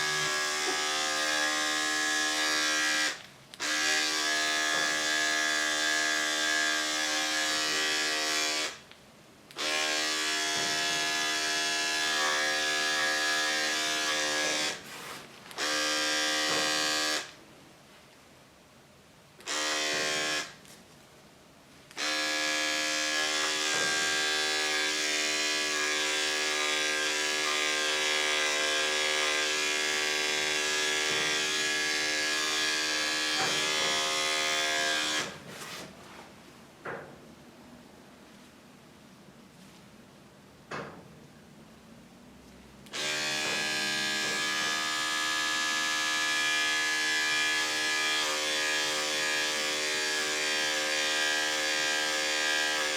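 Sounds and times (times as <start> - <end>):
electric clippers humming: 0.0 - 8.8, 9.6 - 14.8, 15.6 - 17.4, 19.4 - 20.6, 22.0 - 35.4, 42.9 - 52.9.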